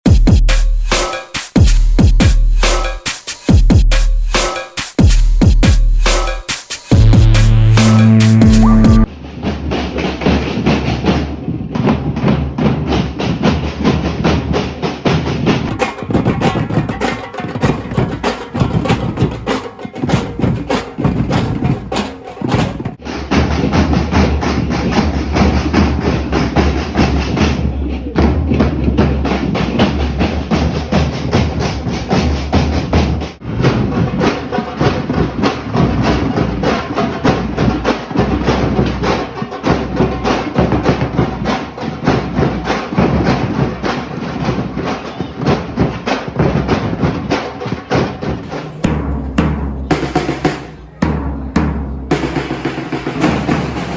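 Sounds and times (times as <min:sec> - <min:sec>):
drums playing: 0:00.0 - 0:53.9
wood block percussion: 0:00.0 - 0:53.9.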